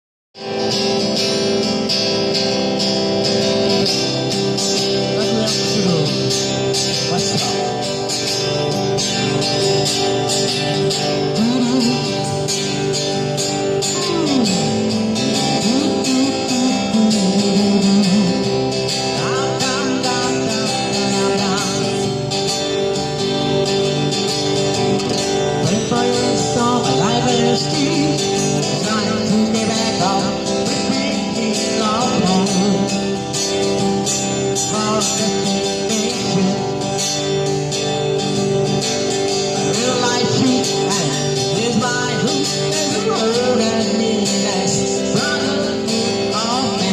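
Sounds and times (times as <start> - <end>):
acoustic guitar: 0.4 - 46.9
person singing: 4.4 - 8.6, 11.0 - 12.9, 13.6 - 22.5, 25.6 - 33.7, 39.4 - 46.9.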